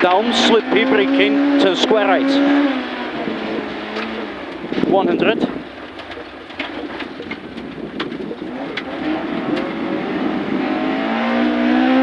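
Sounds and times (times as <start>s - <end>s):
car engine accelerating: 0.0s - 12.0s
ticks and knocks from car underside: 5.6s - 9.8s.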